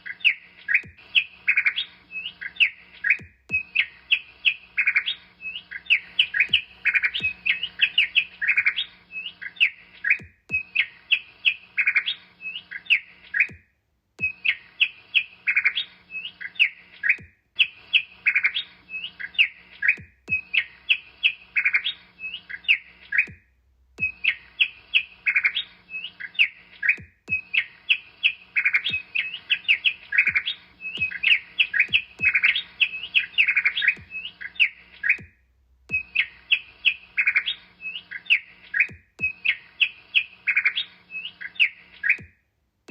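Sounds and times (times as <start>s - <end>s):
small bird chirping: 0.0s - 13.6s, 14.2s - 42.9s.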